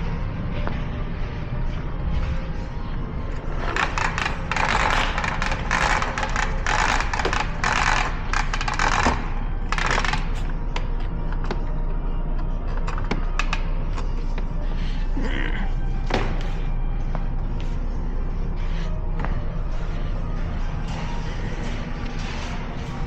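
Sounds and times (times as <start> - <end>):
steady low hum: 0.0 - 23.0
tape crackling and clicking: 3.4 - 11.8.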